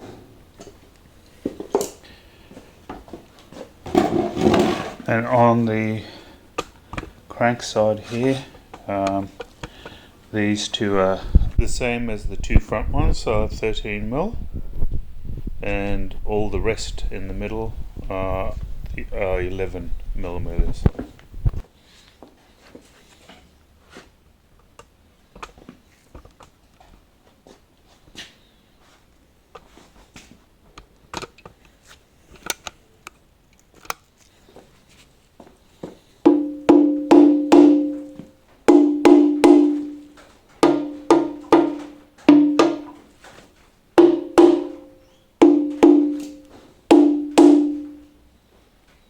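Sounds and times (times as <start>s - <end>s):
hammer striking metal: 36.3s - 43.0s, 44.0s - 48.1s.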